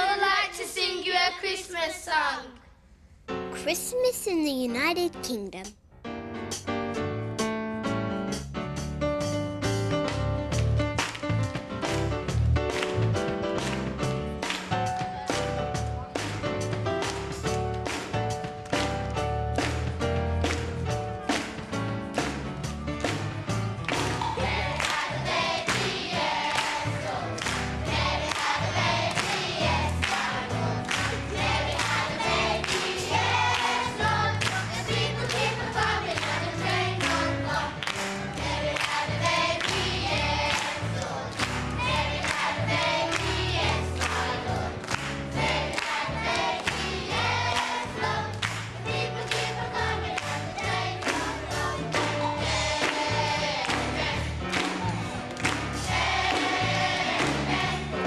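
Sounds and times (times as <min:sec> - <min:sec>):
choir singing: 0:24.2 - 0:55.0, 0:55.8 - 0:58.0.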